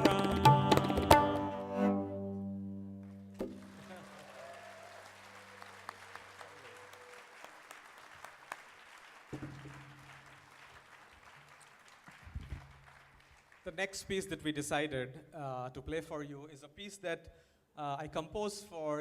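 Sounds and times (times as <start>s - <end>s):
tabla and cello duo: 0.0s - 2.0s
audience applause: 3.0s - 13.7s.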